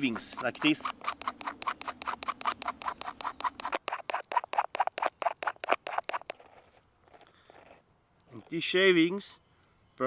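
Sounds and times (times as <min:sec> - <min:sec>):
saw spine scraping wood: 0:00.0 - 0:07.8.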